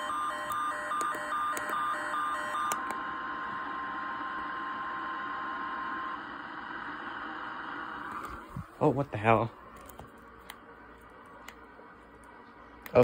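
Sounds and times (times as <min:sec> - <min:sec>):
two-pitch beeping alarm: 0:00.0 - 0:02.8.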